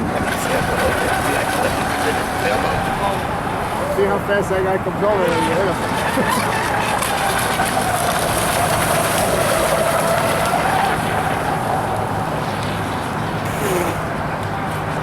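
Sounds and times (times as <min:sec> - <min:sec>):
model boat motor whining: 0:00.0 - 0:14.6
high hiss: 0:13.4 - 0:14.1.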